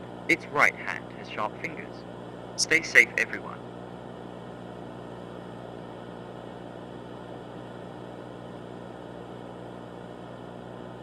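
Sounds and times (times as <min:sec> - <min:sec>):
electronic hum: 0:00.0 - 0:11.0
static hiss: 0:02.6 - 0:03.6.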